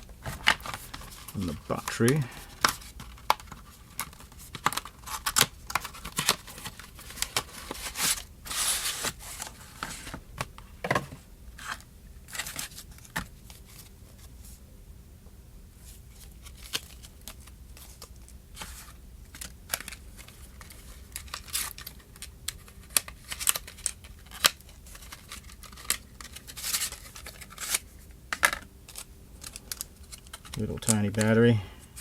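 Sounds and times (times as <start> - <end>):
plastic packaging crinkling: 16.3 - 31.4.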